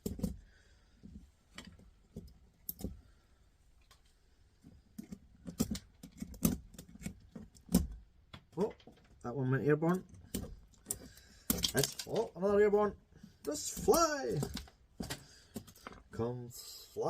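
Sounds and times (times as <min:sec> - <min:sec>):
plastic and metal parts clicking: 0:03.8 - 0:12.4, 0:13.3 - 0:16.2.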